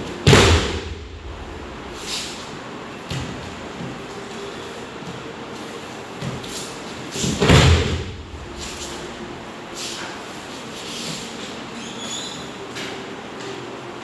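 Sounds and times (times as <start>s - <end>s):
body landing on training mat: 0.2s - 1.2s.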